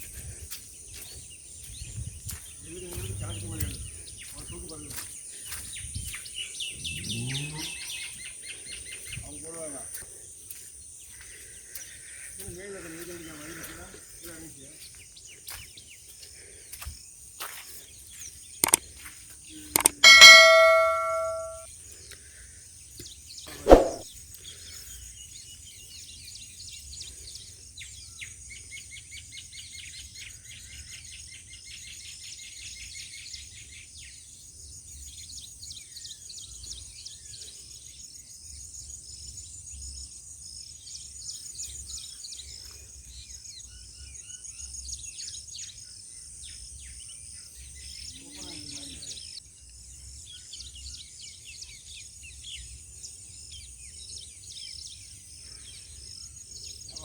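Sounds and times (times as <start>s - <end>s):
ringing metal clang: 19.8s - 21.6s, 23.7s - 24.0s
sharp knocks: 19.8s - 21.6s, 23.7s - 24.0s.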